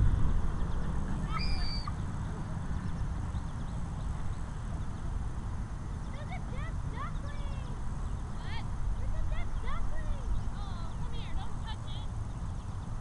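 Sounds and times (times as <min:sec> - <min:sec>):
steady low rumble: 0:00.0 - 0:13.0
bird call: 0:01.2 - 0:02.1.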